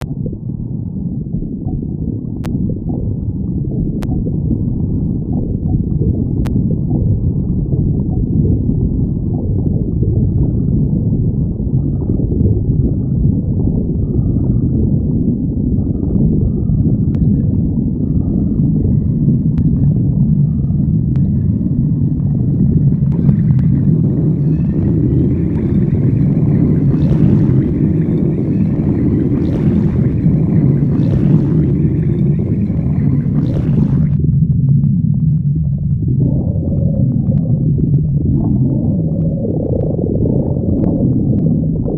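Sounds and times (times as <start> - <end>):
stomach growling: 0.0 - 41.9.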